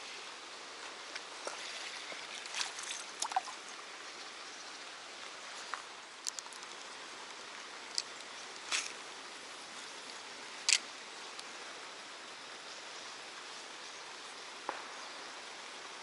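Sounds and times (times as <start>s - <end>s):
outdoor background hiss: 0.0s - 16.0s.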